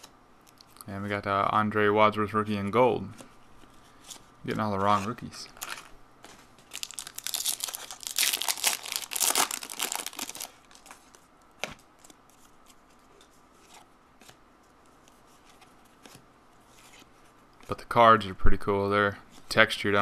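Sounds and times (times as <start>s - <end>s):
wrapper tearing and crumpling: 6.7s - 11.2s.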